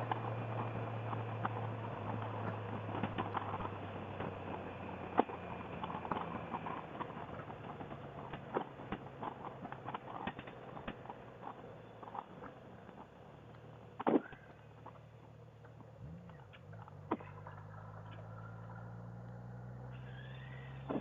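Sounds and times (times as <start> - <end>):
motorcycle engine idling: 0.0 - 21.0.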